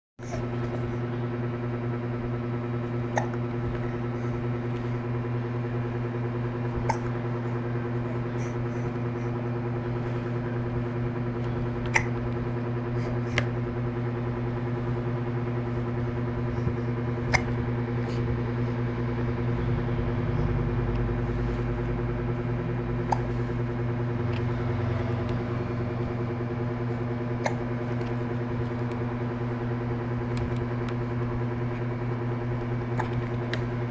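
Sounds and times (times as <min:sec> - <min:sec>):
steady hum: 0:00.2 - 0:33.9
baby hiccuping: 0:11.9 - 0:12.2.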